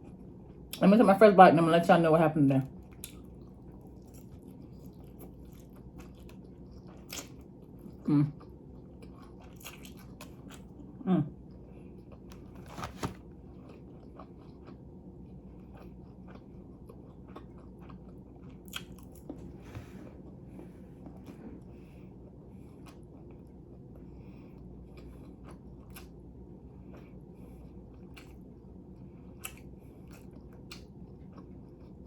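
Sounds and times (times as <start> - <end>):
person biting and chewing food: 2.9 - 8.0, 9.0 - 10.8, 12.1 - 19.6.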